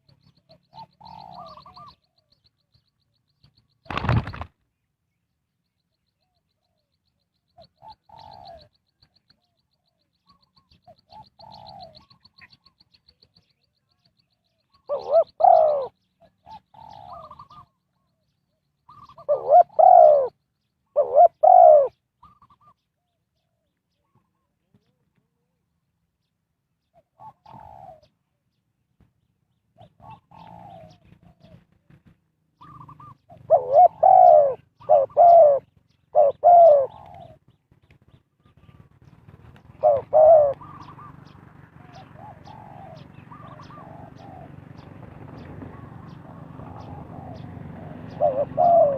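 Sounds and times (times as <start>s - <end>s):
dove cooing: 0.0s - 2.2s, 7.6s - 8.8s, 10.3s - 12.6s, 14.7s - 17.8s, 18.9s - 24.5s, 26.9s - 28.2s, 29.8s - 32.0s, 32.6s - 37.6s, 38.4s - 48.9s.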